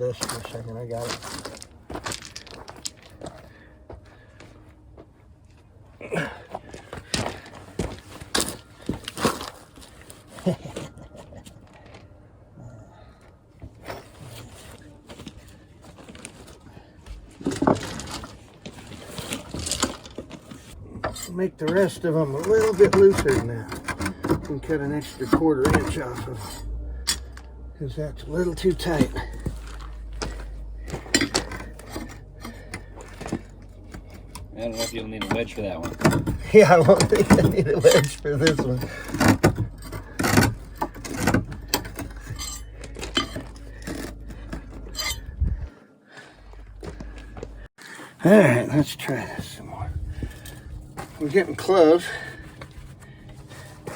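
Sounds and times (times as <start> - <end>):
steel strut knocking and scraping: 20.9 - 27.4, 28.4 - 45.6.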